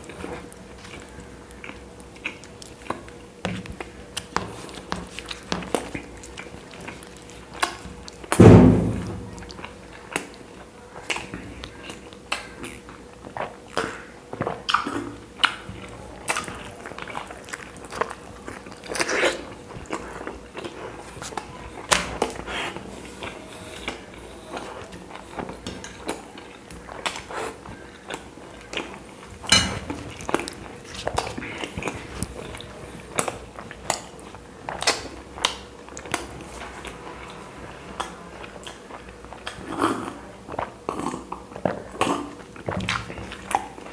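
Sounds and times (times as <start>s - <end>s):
person chewing: 0.0s - 8.4s, 9.1s - 43.9s
loud low thump: 8.4s - 9.4s.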